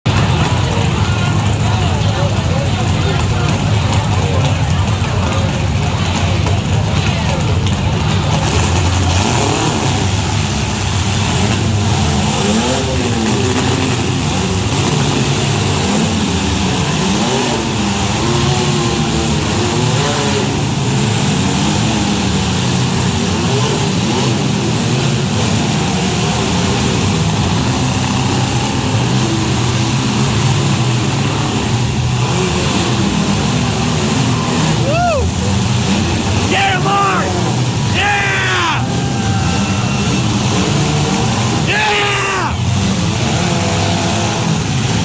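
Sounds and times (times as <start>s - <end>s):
car engines revving: 0.0s - 45.0s.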